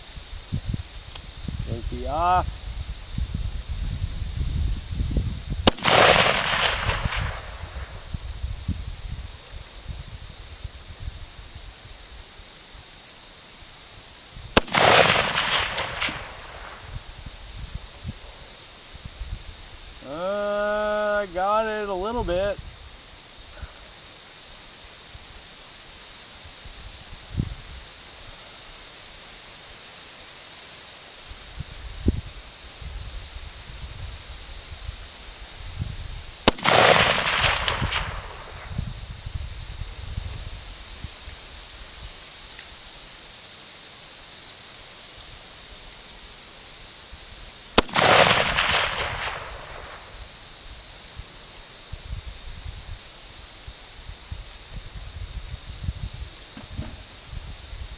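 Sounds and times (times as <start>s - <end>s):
insects trilling: 0.0s - 57.9s
rifle shots with echo: 5.6s - 7.9s, 14.6s - 17.0s, 36.4s - 38.8s, 47.8s - 50.2s.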